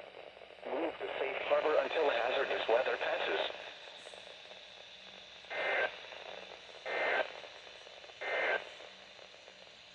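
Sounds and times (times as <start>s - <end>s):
radio hiss: 0.6s - 3.7s.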